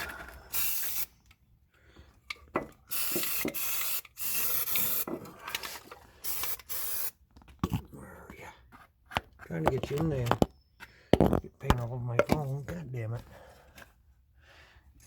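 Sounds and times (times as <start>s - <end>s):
spray paint can hissing: 0.5s - 1.2s, 2.9s - 5.1s, 6.2s - 7.2s.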